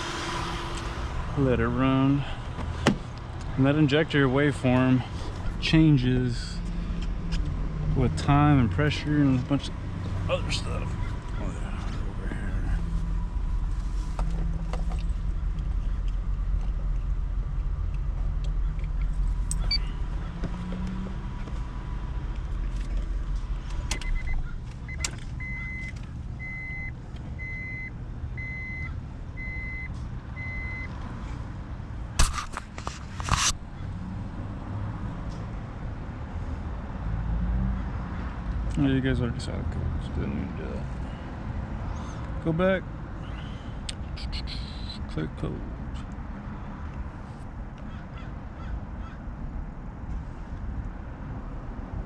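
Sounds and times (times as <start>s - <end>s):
car engine idling: 0.0s - 29.7s
sharp clunks: 2.6s - 3.1s
electronic beeps: 19.6s - 20.0s, 23.9s - 30.9s.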